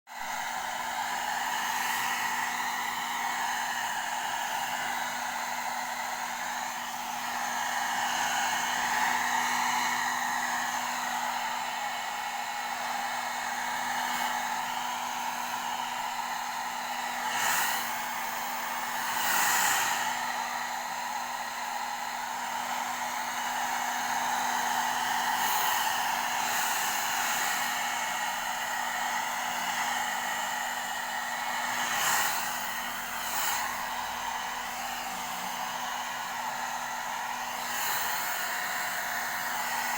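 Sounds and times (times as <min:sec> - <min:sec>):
hair dryer running: 0:00.1 - 0:39.9.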